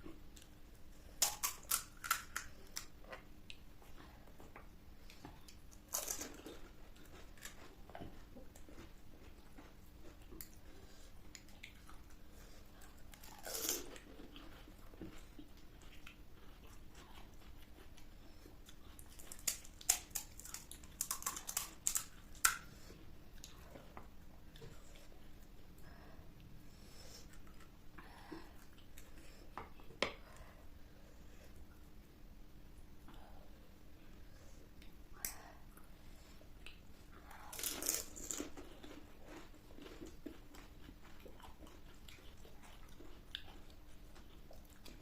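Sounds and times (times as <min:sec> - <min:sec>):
quiet chewing: 0:00.0 - 0:31.9, 0:34.5 - 0:45.0
crunching fried food: 0:01.2 - 0:02.9, 0:05.8 - 0:07.8, 0:18.7 - 0:22.6, 0:37.4 - 0:43.6.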